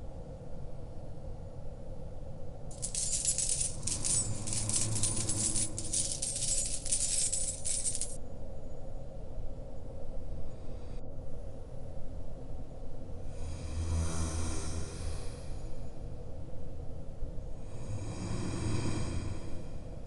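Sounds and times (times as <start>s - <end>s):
metal coins jingling: 2.7s - 8.2s.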